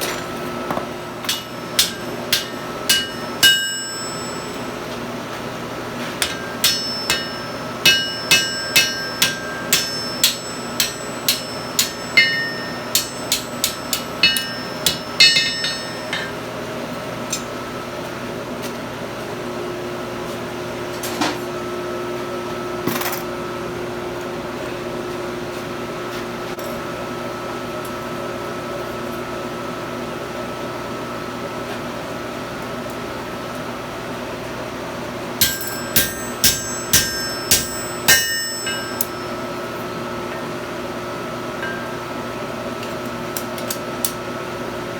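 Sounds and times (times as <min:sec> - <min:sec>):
steady hum: 0:01.0 - 0:17.5, 0:35.4 - 0:39.8
hammer striking steel on anvil: 0:01.2 - 0:04.9, 0:06.1 - 0:16.6, 0:35.4 - 0:39.6, 0:41.6 - 0:42.1
metal clinks: 0:06.2 - 0:16.4.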